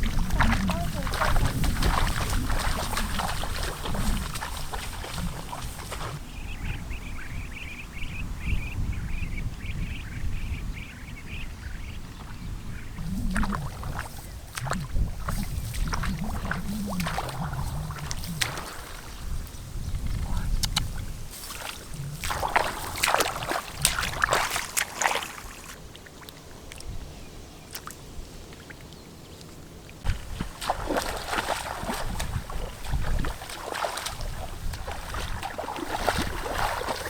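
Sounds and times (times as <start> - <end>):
water sloshing and splashing: 0.0 - 6.2, 13.0 - 27.0, 27.7 - 37.0.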